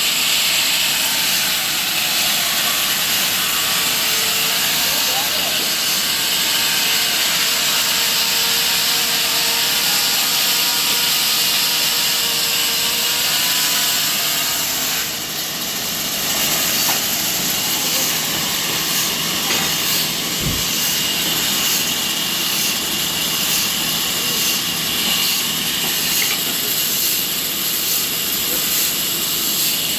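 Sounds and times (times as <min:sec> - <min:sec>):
sawmill saw hissing and whining: 0:00.0 - 0:29.9.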